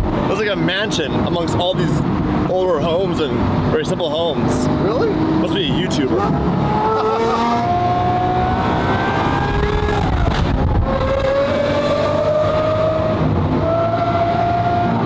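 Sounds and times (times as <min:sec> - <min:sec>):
car engine running: 0:00.0 - 0:13.7.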